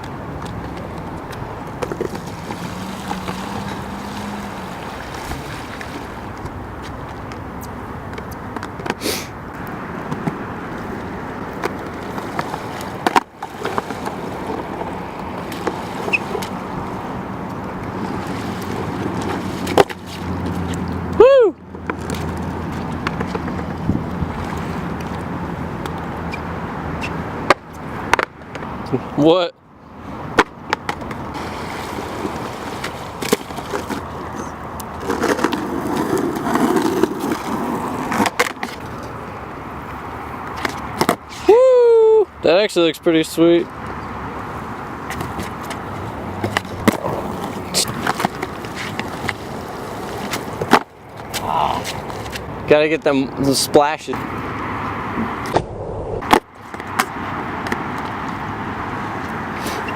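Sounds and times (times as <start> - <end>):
skateboard clacks: 0.0 - 9.0, 9.6 - 26.4, 27.0 - 28.7, 30.3 - 41.3, 45.0 - 52.7
board rolling over wet pavement: 0.0 - 28.7, 30.7 - 41.4, 43.7 - 52.7, 54.2 - 59.9.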